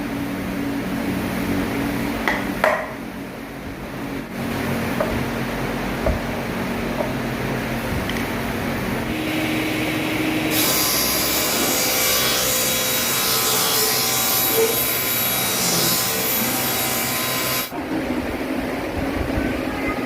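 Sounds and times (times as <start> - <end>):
tool rasping wood: 10.5 - 17.7.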